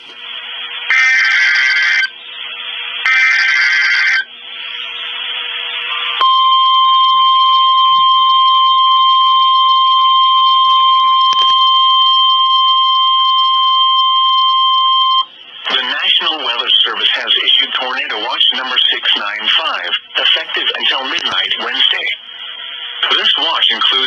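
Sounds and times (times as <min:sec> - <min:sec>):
loud steady alarm beep: 0:00.9 - 0:02.2, 0:03.0 - 0:04.3, 0:06.0 - 0:15.3.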